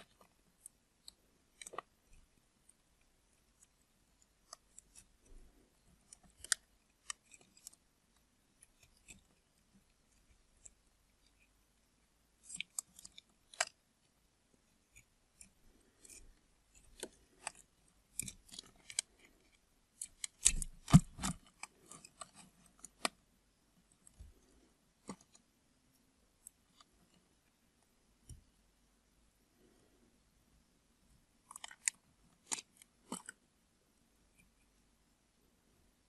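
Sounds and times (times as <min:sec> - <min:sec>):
blade cutting dried soap: 0:00.0 - 0:23.3.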